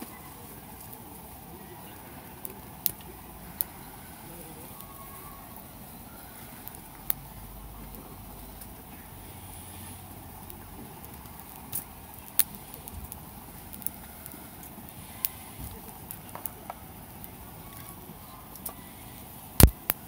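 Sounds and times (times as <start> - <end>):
fire popping: 0.0 - 20.0
wood fire crackling: 0.0 - 20.0.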